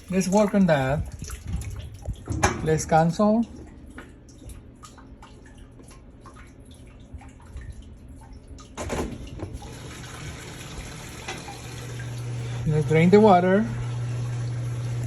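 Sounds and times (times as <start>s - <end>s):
water dripping and trickling: 0.0s - 13.1s
washer low hum: 0.0s - 15.0s
water rushing into tub: 8.7s - 15.0s.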